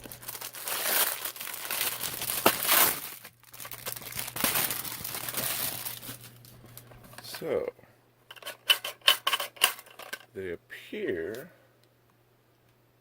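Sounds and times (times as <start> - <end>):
packaging crinkling and rustling: 0.0 - 7.4.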